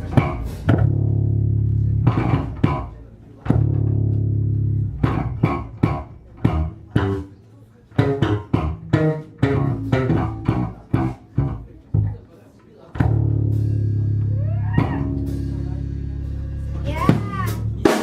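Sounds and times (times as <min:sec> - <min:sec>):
bass guitar notes: 0:00.0 - 0:12.3, 0:13.0 - 0:18.0.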